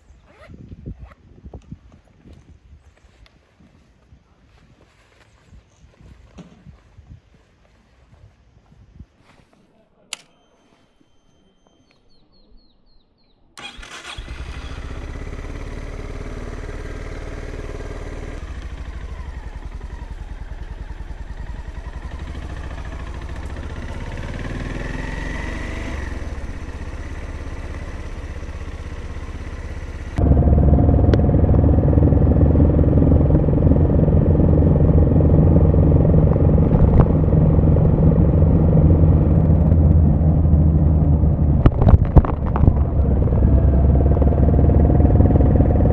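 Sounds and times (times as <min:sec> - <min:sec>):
faint short beeps: 0:10.0 - 0:12.4
motorcycle engine idling: 0:13.6 - 0:45.9.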